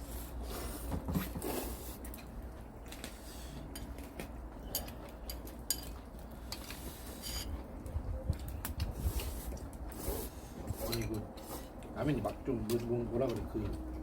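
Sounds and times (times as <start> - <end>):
utensils clinking on dishes: 4.6 - 7.6.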